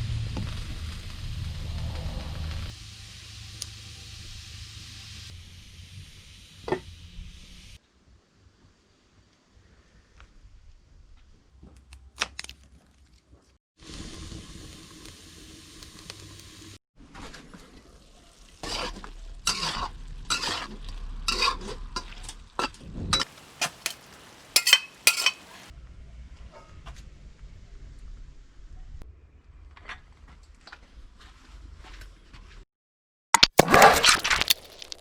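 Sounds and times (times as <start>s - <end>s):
food sizzling in a pan: 0.7s - 7.8s, 13.8s - 16.8s, 18.3s - 22.2s, 23.2s - 25.7s
utensil scraping a pan: 18.6s - 22.2s, 23.2s - 25.7s.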